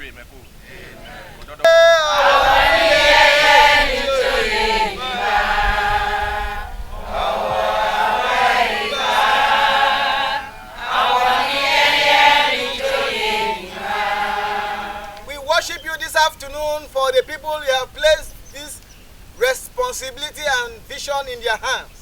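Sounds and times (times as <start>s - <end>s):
group of voices singing: 0.6s - 15.5s.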